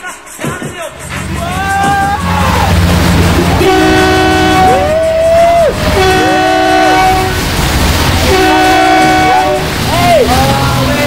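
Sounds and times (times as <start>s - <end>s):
passing traffic rumbling: 0.9s - 11.0s
vehicle horns honking: 2.2s - 5.2s, 5.8s - 7.5s, 8.2s - 9.9s.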